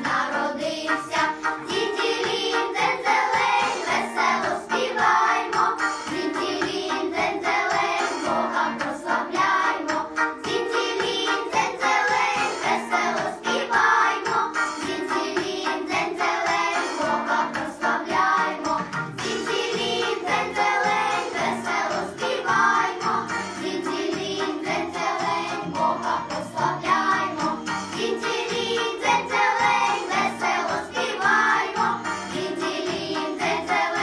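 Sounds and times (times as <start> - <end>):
children's choir singing: 0.0 - 34.0
instrumental accompaniment: 0.0 - 34.0.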